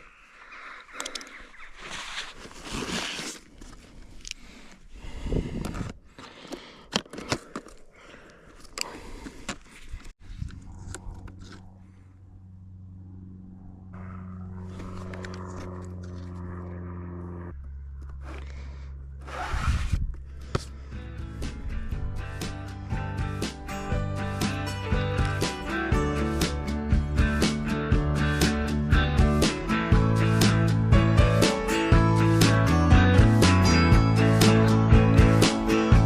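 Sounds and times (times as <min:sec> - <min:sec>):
microphone handling scrapes and clicks: 0:01.7 - 0:07.8, 0:18.0 - 0:20.8
wind noise on microphone: 0:05.0 - 0:06.1, 0:09.8 - 0:11.5, 0:19.3 - 0:20.5, 0:21.3 - 0:22.7
background music with sustained chords: 0:20.5 - 0:36.0.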